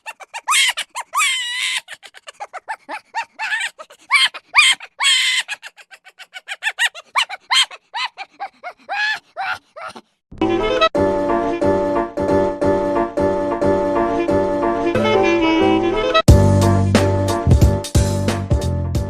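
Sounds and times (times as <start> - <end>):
squeaky comedy chattering: 0.0 - 10.0
longer squeals: 0.3 - 8.1.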